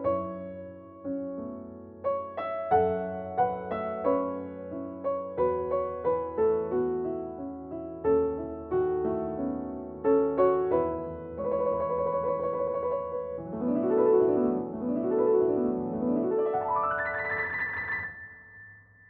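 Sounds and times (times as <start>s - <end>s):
piano music: 0.0s - 19.0s.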